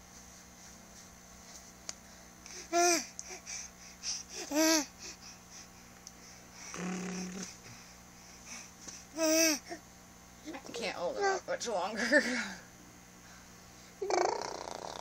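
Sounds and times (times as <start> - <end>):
baby grunting: 6.7 - 7.5, 14.0 - 15.0.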